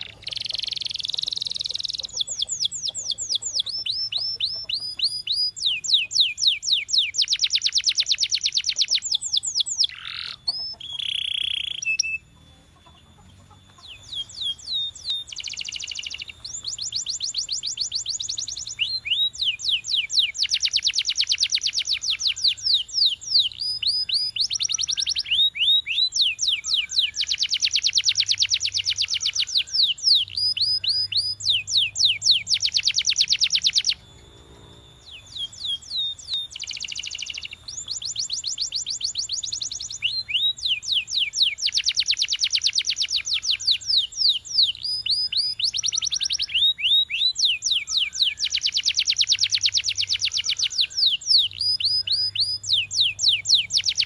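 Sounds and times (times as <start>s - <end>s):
canary singing in trills: 0.0s - 54.0s.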